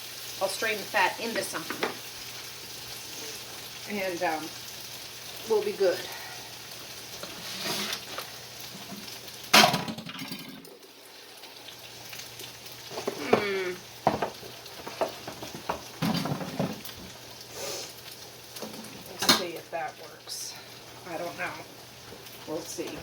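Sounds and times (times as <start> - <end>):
meat sizzling in a frying pan: 0.0 - 23.0
utensil scraping and knocking pan: 7.2 - 8.1.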